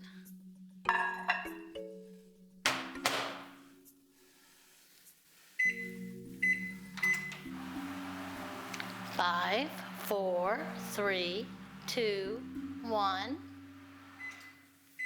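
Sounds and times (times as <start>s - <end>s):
microwave oven humming: 5.9s - 15.0s
microwave door shutting: 6.9s - 9.0s.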